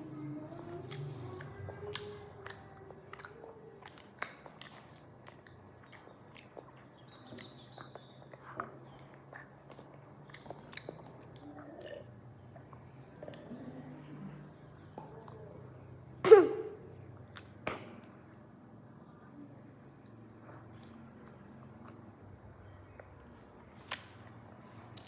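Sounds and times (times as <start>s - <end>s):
person chewing with crunches: 0.9s - 12.0s.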